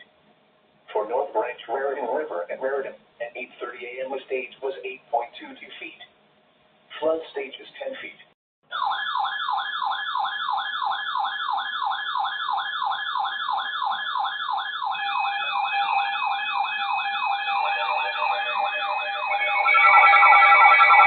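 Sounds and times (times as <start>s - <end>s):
siren yelping: 8.7s - 21.0s
steady high tones: 14.9s - 21.0s.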